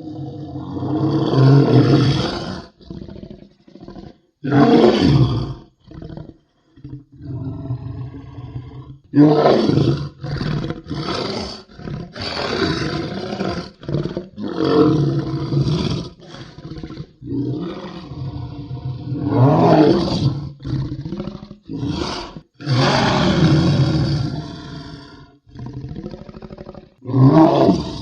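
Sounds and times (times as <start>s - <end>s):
monster roars and growls: 17.3s - 26.3s, 27.0s - 28.0s.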